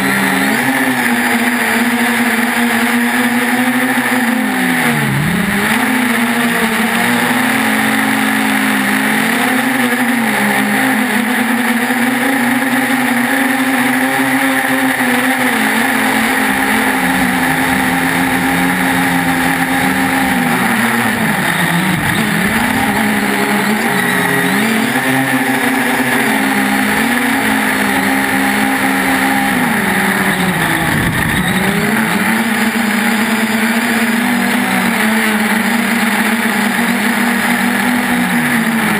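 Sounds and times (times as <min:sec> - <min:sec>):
drone motors and propellers humming: 0:00.0 - 0:38.9.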